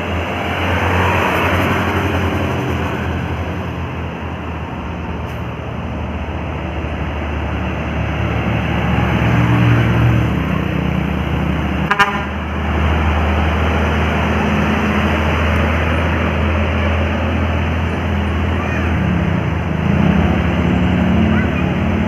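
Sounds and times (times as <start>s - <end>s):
tyre and road noise: 0.0s - 22.0s
vehicle engines running: 0.0s - 22.0s.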